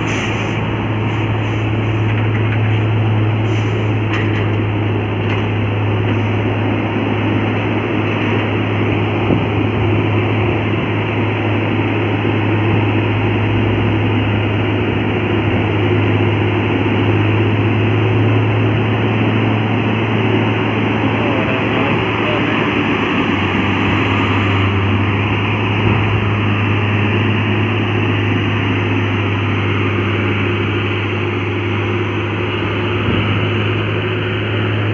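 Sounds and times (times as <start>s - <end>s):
deep engine drone: 0.0s - 34.9s
road noise: 0.0s - 34.9s.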